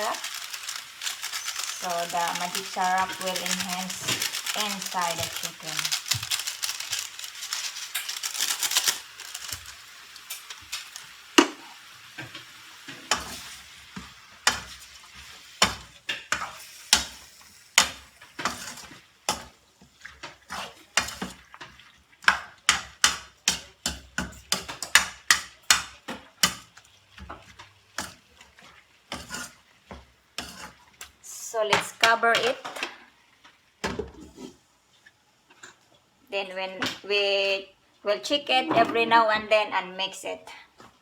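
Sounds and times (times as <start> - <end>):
chicken sizzling in a pan: 0.0 - 31.7
utensil scraping and knocking pan: 29.1 - 30.8.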